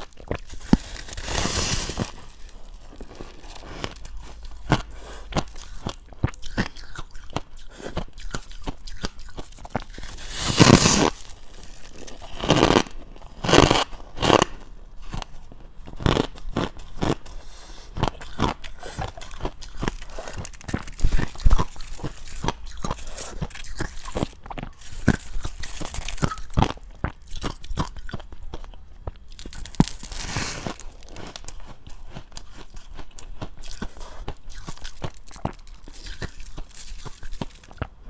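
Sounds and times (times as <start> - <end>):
ice being chewed: 0.0 - 38.0.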